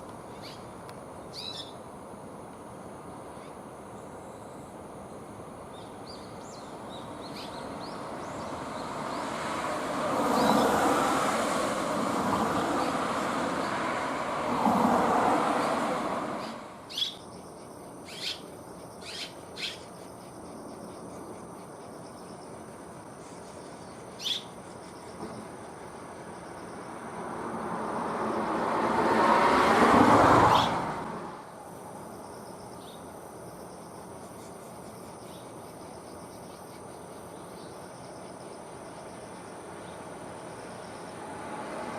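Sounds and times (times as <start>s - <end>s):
vehicles passing by: 6.5s - 17.4s, 22.5s - 32.3s, 37.4s - 41.9s.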